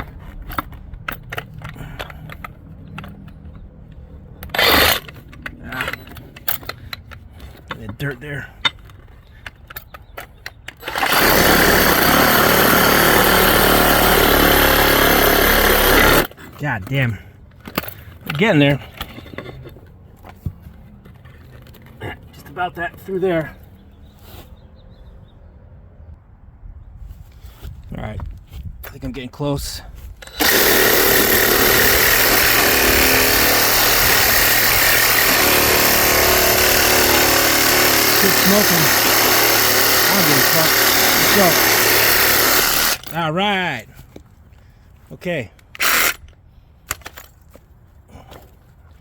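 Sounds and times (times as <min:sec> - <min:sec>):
reciprocating saw cutting rubber: 0:10.8 - 0:16.3, 0:30.2 - 0:43.0.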